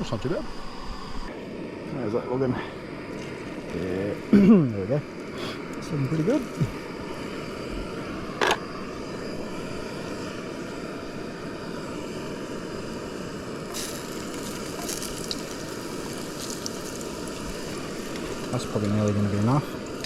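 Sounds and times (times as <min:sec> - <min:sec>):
chips sizzling in hot oil: 0:12.6 - 0:20.0.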